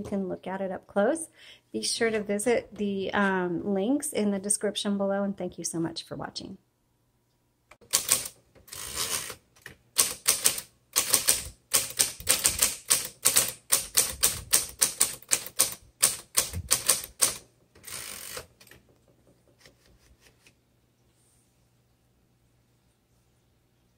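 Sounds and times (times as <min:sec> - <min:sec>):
typewriter key strikes: 0:07.8 - 0:08.4, 0:10.0 - 0:18.8
drawn-out typewriter mechanical sound: 0:07.8 - 0:18.8.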